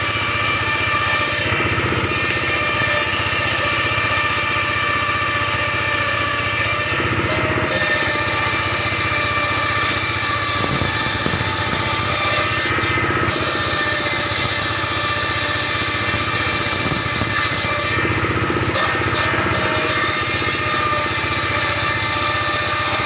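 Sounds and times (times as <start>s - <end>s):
circular saw cutting timber: 0.0s - 23.0s.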